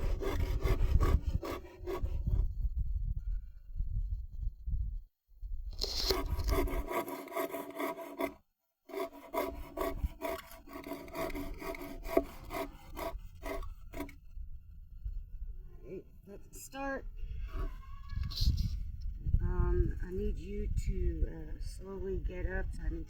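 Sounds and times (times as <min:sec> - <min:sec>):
hand saw cutting wood: 0:00.0 - 0:02.4, 0:05.8 - 0:14.2.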